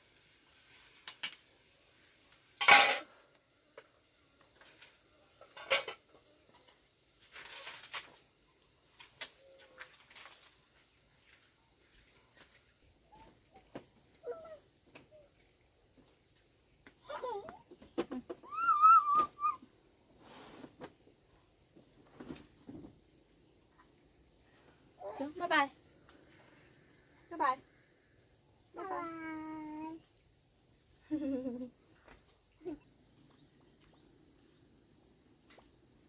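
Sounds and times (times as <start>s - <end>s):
insects droning: 0.0s - 36.0s
kitchen utensils and dishes clattering: 2.6s - 3.1s, 5.5s - 6.0s.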